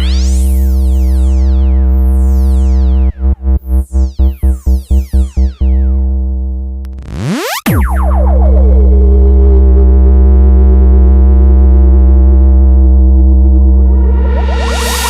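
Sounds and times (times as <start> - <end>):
electronic music with bass drone: 0.0 - 15.0
falling synth sweeps: 13.8 - 15.0.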